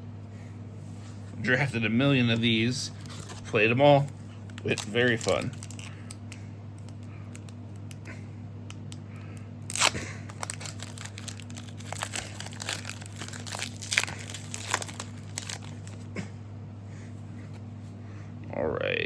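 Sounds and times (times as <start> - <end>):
wrapper crackles and clicks: 2.4 - 8.1, 9.6 - 16.0
foil pack tearing: 2.9 - 6.2, 9.6 - 16.0.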